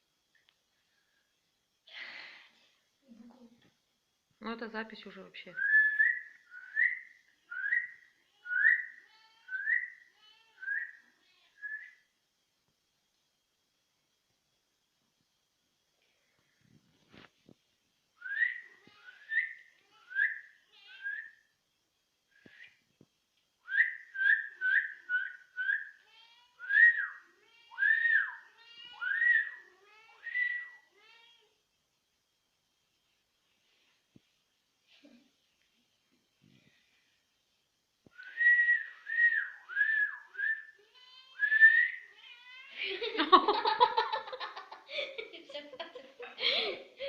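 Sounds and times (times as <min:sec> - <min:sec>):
person whistling rising notes: 0:38.1 - 0:40.7.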